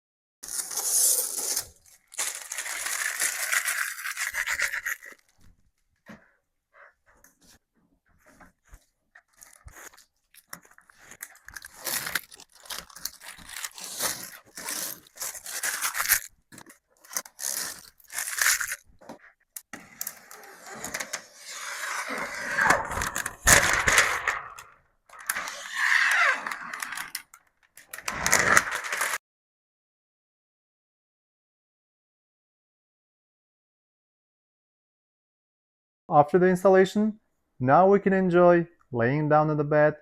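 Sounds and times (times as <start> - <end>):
plastic cable cover scraping: 0.4 - 5.6, 8.2 - 29.2
tape being peeled: 0.4 - 5.6, 8.2 - 29.2.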